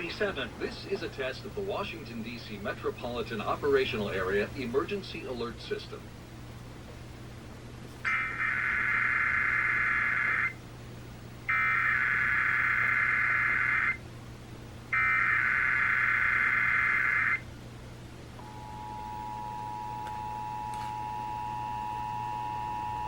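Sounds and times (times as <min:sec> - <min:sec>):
emergency alert data tones: 0:08.1 - 0:10.6, 0:11.5 - 0:14.0, 0:14.9 - 0:17.4
two-tone attention signal: 0:18.4 - 0:23.0.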